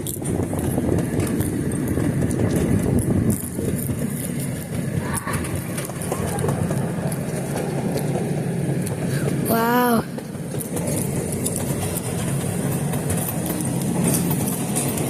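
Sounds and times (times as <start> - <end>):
train rumbling along track: 0.0 - 15.0.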